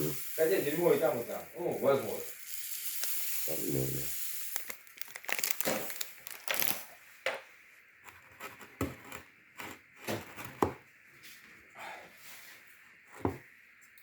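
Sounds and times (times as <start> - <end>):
crinkly material crackling: 0.4 - 7.0.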